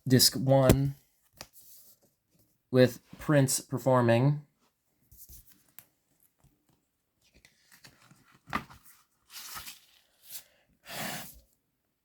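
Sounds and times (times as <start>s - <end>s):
sharp tap: 0.7s - 0.9s
record sleeves rustling and sliding: 7.3s - 11.3s.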